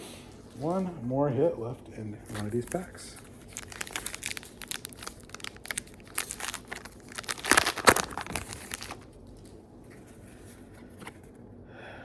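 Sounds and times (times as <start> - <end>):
card pack wrapper tearing: 2.3 - 9.1.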